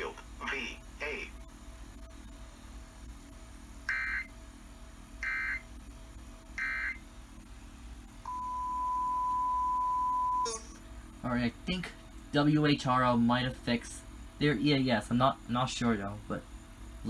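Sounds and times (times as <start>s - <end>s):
steady single tone: 8.2s - 10.8s.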